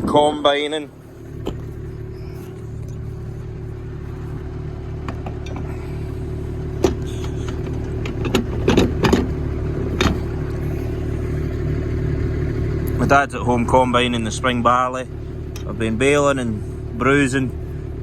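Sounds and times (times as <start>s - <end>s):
tractor diesel engine running: 0.0s - 18.0s
sharp clicks and rattles: 6.8s - 10.2s.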